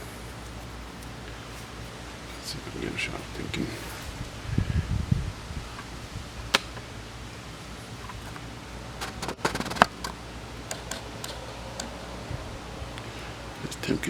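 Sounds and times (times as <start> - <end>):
low steady background hum: 0.0 - 14.0
handling clicks and taps: 9.0 - 12.0.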